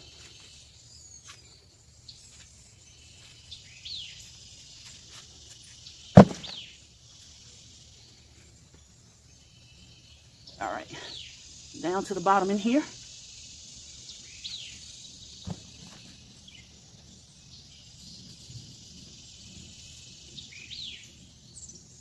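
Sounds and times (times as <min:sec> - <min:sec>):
insects droning: 0:00.0 - 0:22.0
sharp knock: 0:06.2 - 0:06.6.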